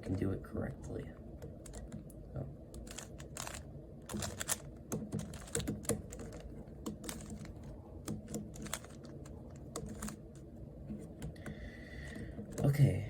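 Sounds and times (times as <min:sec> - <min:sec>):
puzzle cube clicking as turned: 0:02.8 - 0:10.2.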